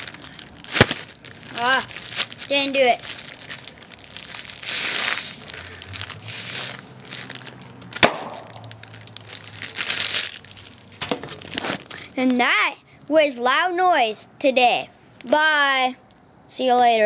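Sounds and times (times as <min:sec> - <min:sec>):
bag popping: 0:00.0 - 0:05.3, 0:07.2 - 0:10.4, 0:11.0 - 0:12.0
bag crinkling: 0:00.0 - 0:12.4.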